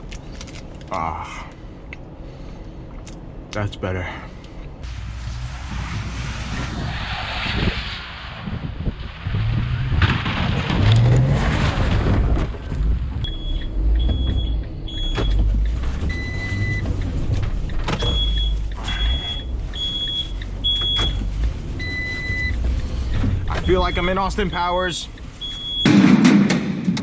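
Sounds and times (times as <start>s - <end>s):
van engine and tyre noise: 0.0s - 27.0s
high electronic warning beeps: 13.3s - 16.9s, 18.0s - 22.6s, 23.5s - 25.9s.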